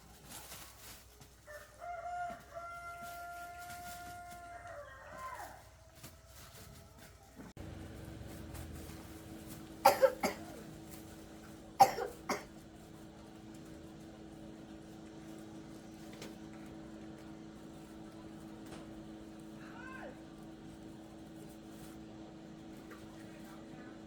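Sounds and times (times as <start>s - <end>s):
girl coughing: 9.8s - 10.6s, 11.8s - 12.6s.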